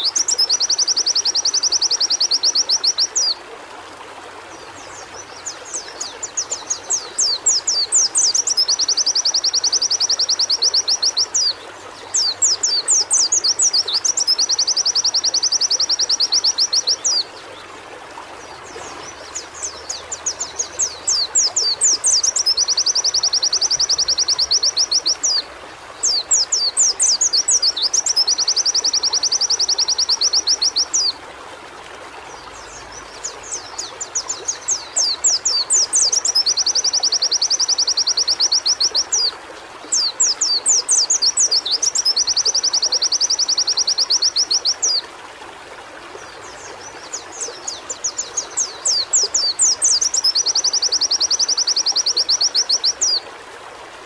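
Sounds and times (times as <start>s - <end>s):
bird chirping and trilling: 18.7s - 31.2s, 46.6s - 53.2s.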